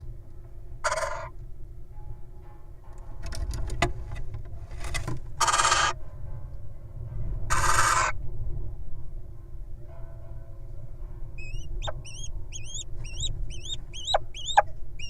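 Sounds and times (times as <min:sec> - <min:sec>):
owl raspy hissing calls: 0:00.9 - 0:01.3, 0:05.4 - 0:06.0, 0:07.5 - 0:08.2, 0:11.4 - 0:14.6
steady low hum: 0:08.2 - 0:15.0.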